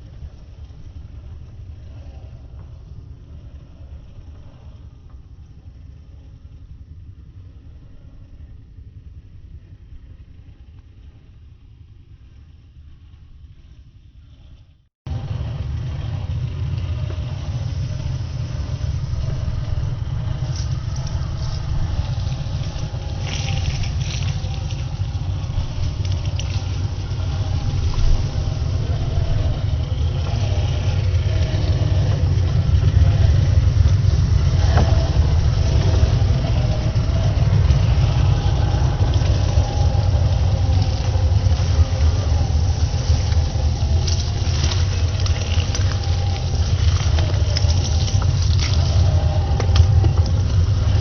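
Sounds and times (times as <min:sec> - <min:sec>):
low rumble: 0:00.0 - 0:51.0
electric motor whine: 0:15.1 - 0:51.0.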